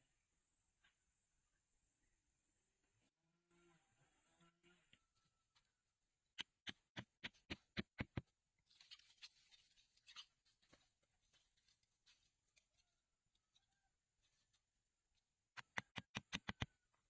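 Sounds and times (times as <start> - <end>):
rustling: 8.6 - 14.8.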